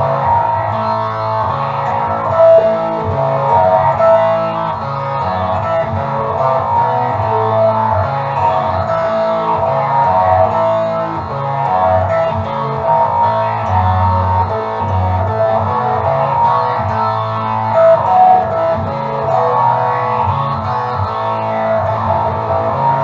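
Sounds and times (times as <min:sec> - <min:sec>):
bass line: 0:00.0 - 0:23.0
guitar music: 0:00.0 - 0:23.0.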